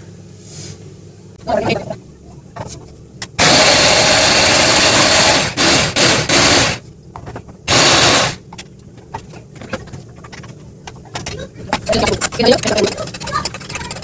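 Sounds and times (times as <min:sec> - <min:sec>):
electric mixer grinder running: 0:03.4 - 0:06.8, 0:07.7 - 0:08.4.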